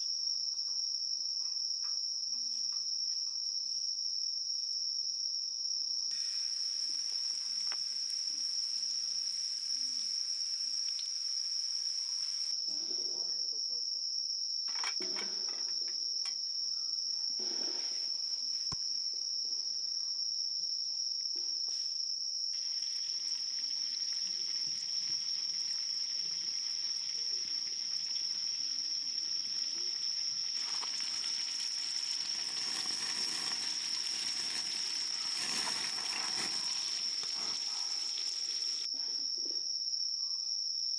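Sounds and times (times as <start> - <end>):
insects chirring: 0.0 - 40.9
rustling hiss: 6.1 - 12.5, 22.6 - 38.9.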